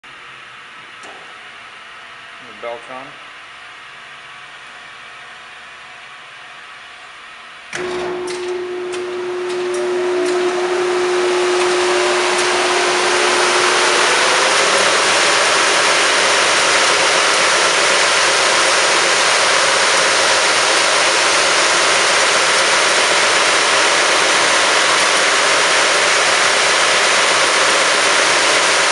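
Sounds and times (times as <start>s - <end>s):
steady tone: 7.8s - 20.2s
belt sander running: 7.8s - 28.9s.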